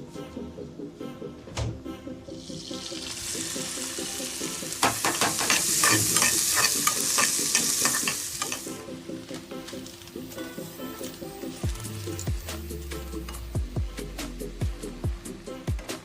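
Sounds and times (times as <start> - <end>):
food sizzling in a pan: 2.3 - 15.8
spatula scraping a pan: 4.8 - 8.8.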